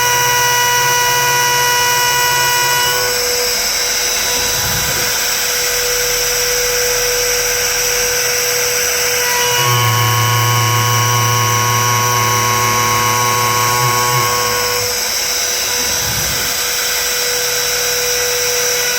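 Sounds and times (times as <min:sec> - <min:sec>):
machine spindle high-pitched whine: 0:00.0 - 0:18.9
drive motors humming: 0:09.2 - 0:16.8.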